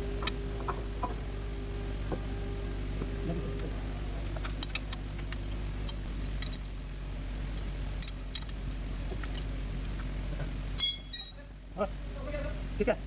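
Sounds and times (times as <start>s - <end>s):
low machine hum: 0.0s - 13.0s
hand tools clinking: 10.8s - 11.4s.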